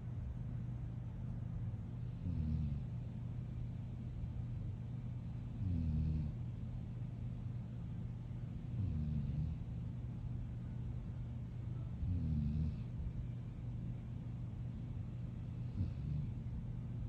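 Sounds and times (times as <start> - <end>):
steady low hum: 0.0 - 17.0
pet snoring: 2.1 - 2.9, 5.5 - 6.4, 8.7 - 9.7, 12.0 - 12.9, 15.6 - 16.4.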